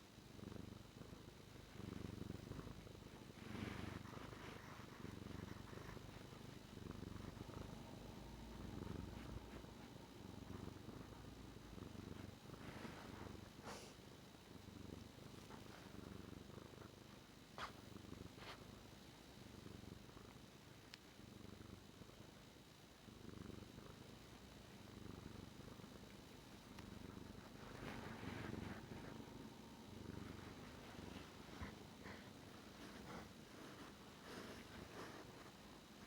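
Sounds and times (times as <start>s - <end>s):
cat purring: 0.0s - 36.0s
soft rustles: 2.0s - 6.6s, 7.2s - 14.0s, 15.3s - 18.9s, 26.5s - 36.0s.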